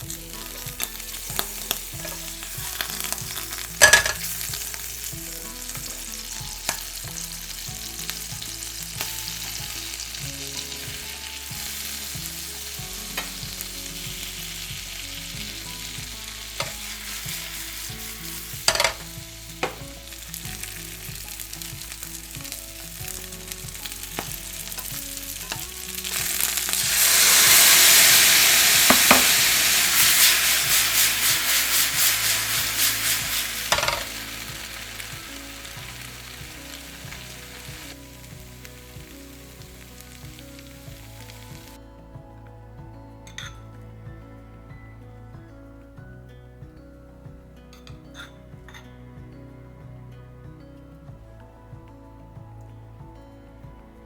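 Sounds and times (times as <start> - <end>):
food sizzling in a pan: 0.0 - 41.8.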